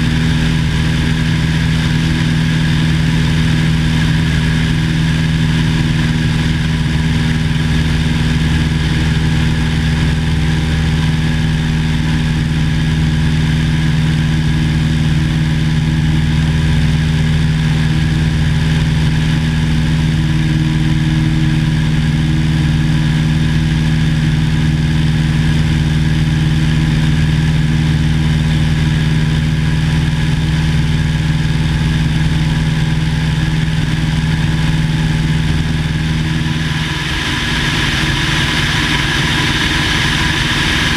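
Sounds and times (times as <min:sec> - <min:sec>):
propeller aircraft engine droning: 0:00.0 - 0:40.9.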